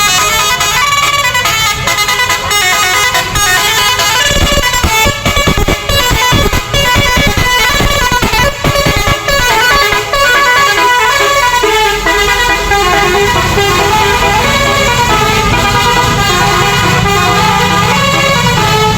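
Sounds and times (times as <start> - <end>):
multi-tone air horn melody: 0.0 - 18.9.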